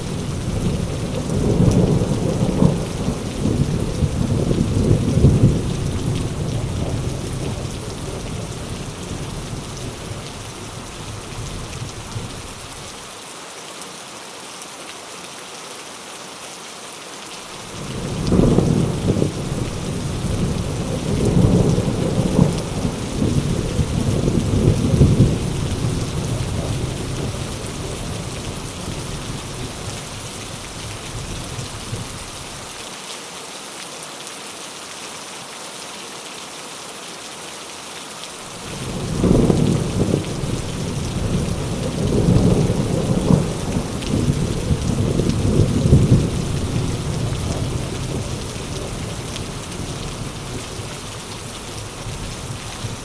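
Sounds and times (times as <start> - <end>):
rolling thunder: 0.0 - 12.7, 17.6 - 32.6, 38.6 - 53.0
heavy rain: 0.0 - 53.0.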